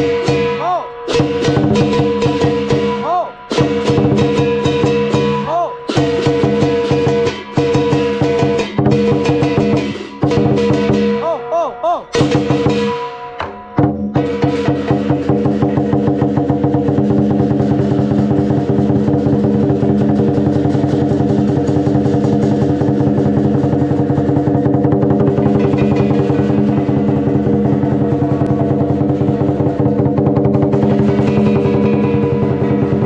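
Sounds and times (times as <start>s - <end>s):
cymbals ringing: 0.0s - 33.0s
drum beaten in fast rhythm: 0.0s - 33.0s
gong ringing: 30.7s - 33.0s.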